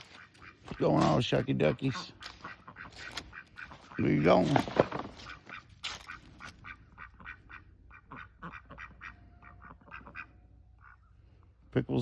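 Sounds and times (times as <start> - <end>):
ducks quacking: 0.0 - 12.0.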